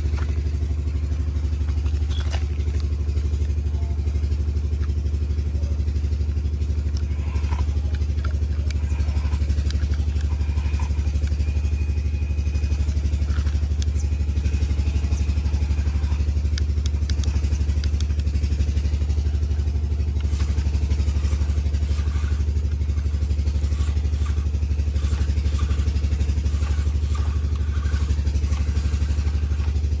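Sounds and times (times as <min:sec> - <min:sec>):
engine idling: 0:00.0 - 0:30.0
light clatter and clicks: 0:06.8 - 0:30.0.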